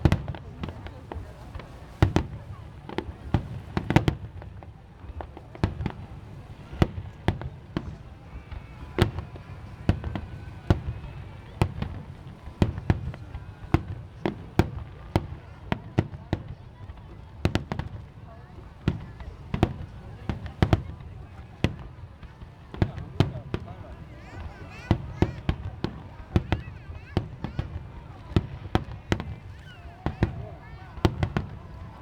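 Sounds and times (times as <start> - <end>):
fireworks bursting with echo: 0.0 - 32.0.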